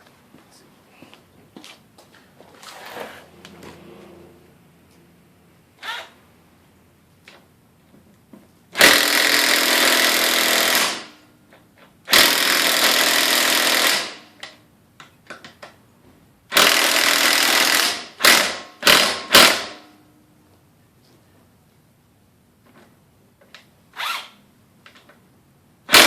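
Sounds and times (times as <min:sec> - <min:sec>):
impact wrench hammering: 0:08.8 - 0:11.2, 0:16.5 - 0:20.0.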